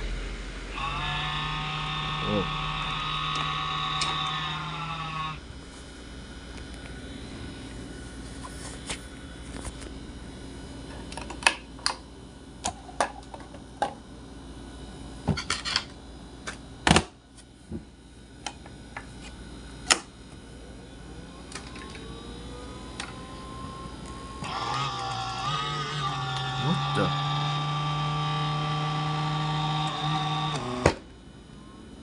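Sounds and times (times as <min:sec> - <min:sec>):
electric fan humming: 0:00.0 - 0:32.0.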